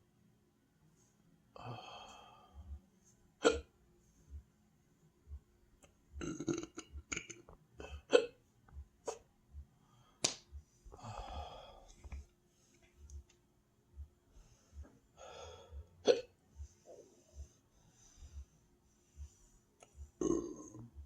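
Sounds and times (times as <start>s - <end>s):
person burping: 6.2s - 8.4s, 20.2s - 20.9s
person hiccuping: 6.2s - 8.4s, 16.0s - 16.3s, 20.2s - 20.8s.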